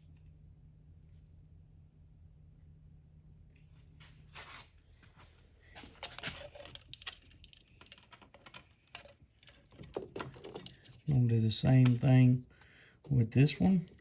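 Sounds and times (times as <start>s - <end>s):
electrical wires being handled: 3.6s - 14.0s.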